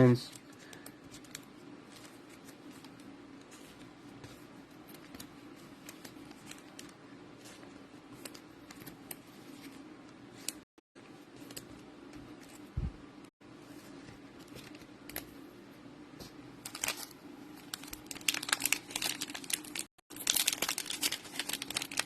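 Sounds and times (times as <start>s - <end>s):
card packs crinkling: 0.0s - 9.7s, 16.6s - 22.0s
steady low hum: 0.0s - 17.8s.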